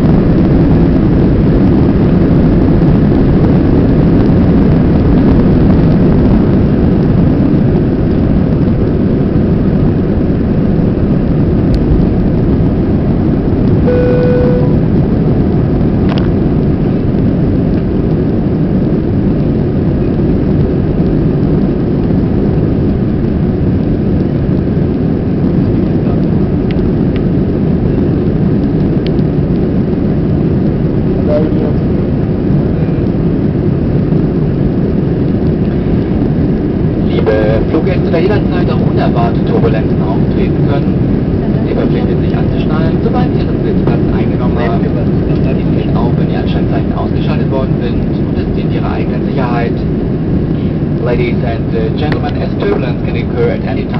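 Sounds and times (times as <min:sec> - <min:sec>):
airplane cabin engine rush: 0:00.0 - 0:53.9
cabin chime: 0:13.9 - 0:14.8.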